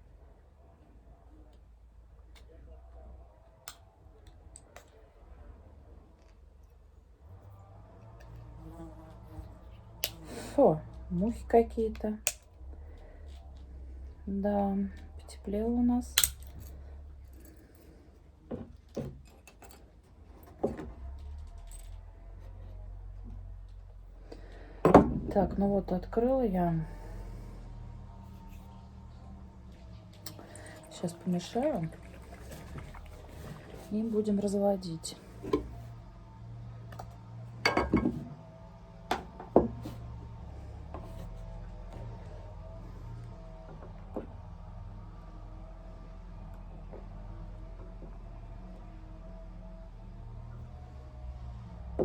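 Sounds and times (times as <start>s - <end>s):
glassware clinks and knocks: 37.7s - 38.2s.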